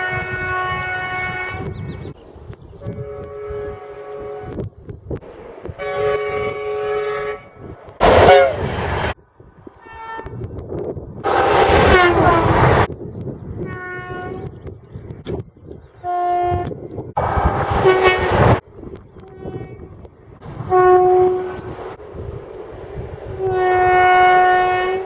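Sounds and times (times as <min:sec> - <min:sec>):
train horn blasts: 0:00.0 - 0:01.9, 0:02.8 - 0:04.7, 0:05.8 - 0:09.1, 0:09.8 - 0:10.4, 0:11.3 - 0:12.9, 0:13.6 - 0:14.5, 0:16.0 - 0:18.6, 0:19.2 - 0:19.9, 0:20.5 - 0:22.0, 0:23.3 - 0:25.0
trains rumbling on track: 0:00.0 - 0:14.6, 0:16.0 - 0:25.0.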